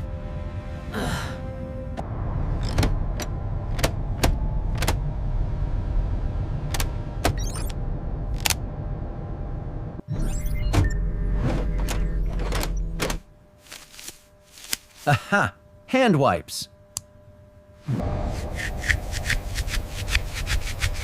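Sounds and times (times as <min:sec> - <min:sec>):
low machine hum: 0:00.0 - 0:21.0.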